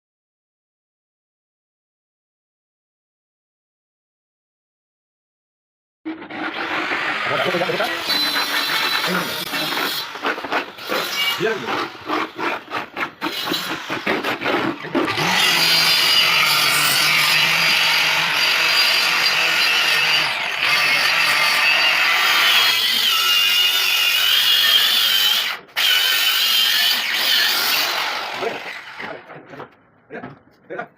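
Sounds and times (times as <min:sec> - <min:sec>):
power tool running on wood: 0:06.1 - 0:29.2.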